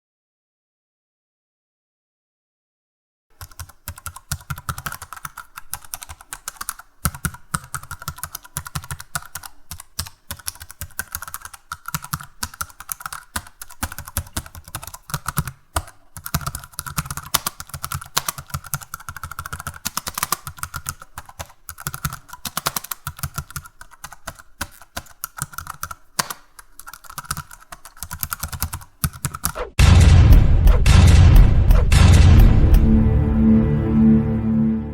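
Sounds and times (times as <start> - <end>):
keyboard key clicks: 3.4 - 29.7.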